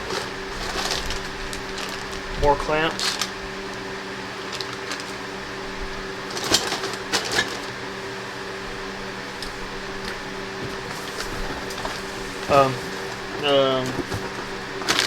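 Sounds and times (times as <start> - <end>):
packaging rustling and clicking: 0.0 - 2.3, 2.9 - 3.8, 4.4 - 5.2, 6.2 - 7.8, 9.2 - 15.0
steady hum: 0.0 - 15.0.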